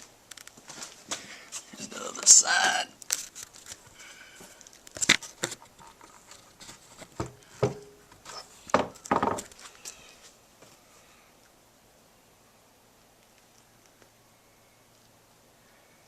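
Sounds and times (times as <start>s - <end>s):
wooden slab knocks and clunks: 7.0s - 8.0s, 8.7s - 9.5s.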